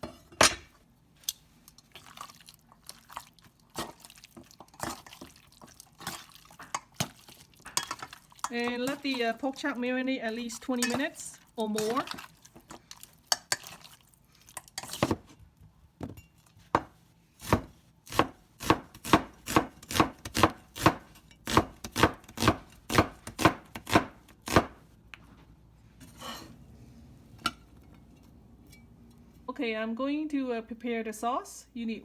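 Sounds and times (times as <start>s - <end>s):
knife chopping on cutting board: 16.8s - 24.8s.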